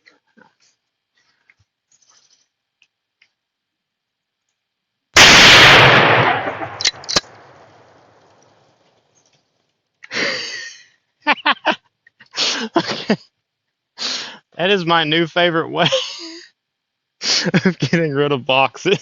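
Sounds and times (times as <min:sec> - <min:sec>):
loud explosive blast: 0:05.2 - 0:08.2
sharp cracks: 0:05.2 - 0:09.0.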